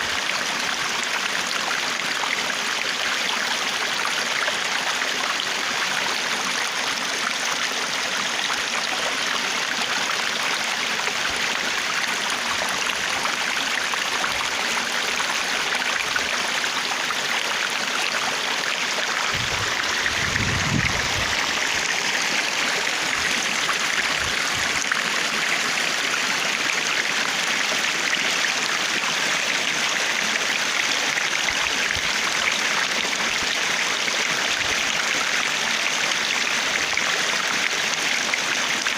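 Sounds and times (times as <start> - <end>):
stream water flowing and splashing: 0.0 - 38.9
low rumble: 19.3 - 21.4.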